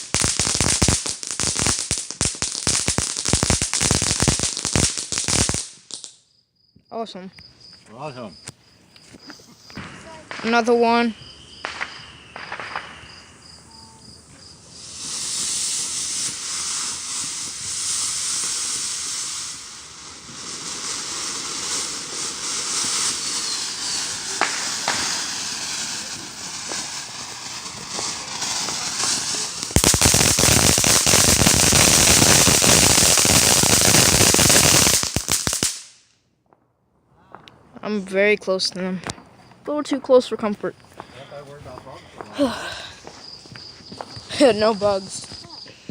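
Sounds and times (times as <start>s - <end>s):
firework cracks and crackling: 0.0s - 6.2s, 9.3s - 36.2s, 41.3s - 45.9s
firework spraying hiss: 0.0s - 6.2s, 9.3s - 36.0s.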